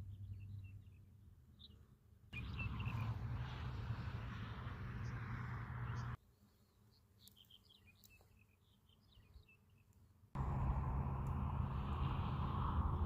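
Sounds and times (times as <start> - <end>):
outdoor rushing noise: 2.4 - 6.2, 10.4 - 13.0
small birds chirping: 5.9 - 10.0
low rumble: 10.4 - 13.0.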